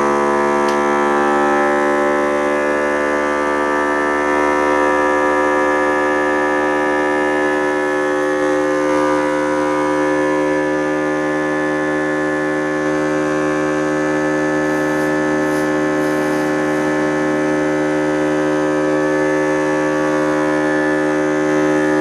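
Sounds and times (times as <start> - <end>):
steady layered electric hum: 0.0 - 22.0.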